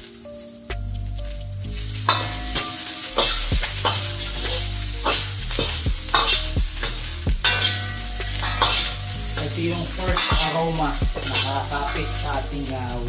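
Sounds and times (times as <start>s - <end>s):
food sizzling in hot oil: 0.0s - 13.0s
spatula knocking against wok: 2.1s - 9.5s, 10.1s - 12.0s.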